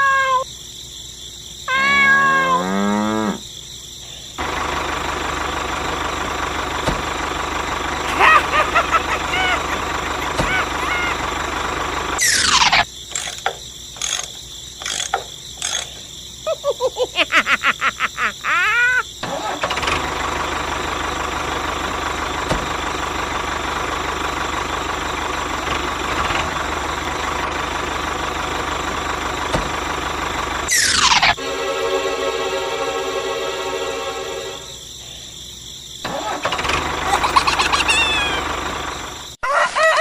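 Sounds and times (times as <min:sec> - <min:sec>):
vehicle engine starting: 0:04.4 - 0:16.0, 0:19.2 - 0:39.4.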